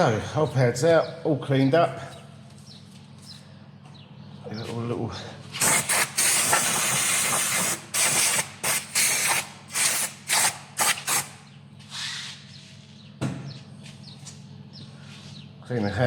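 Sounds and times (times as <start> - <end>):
air blow gun hissing blasts: 5.6 - 11.4
knock: 13.2 - 13.5.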